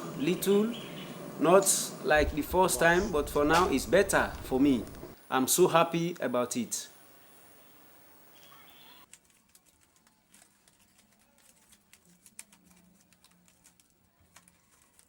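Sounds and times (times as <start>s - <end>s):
faint low hum: 2.1s - 5.2s.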